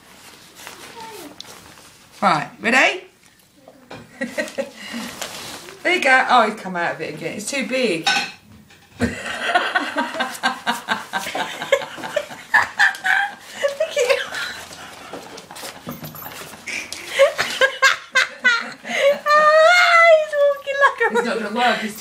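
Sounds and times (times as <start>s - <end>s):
people laughing: 9.0s - 19.7s
dog moving about: 12.1s - 17.8s.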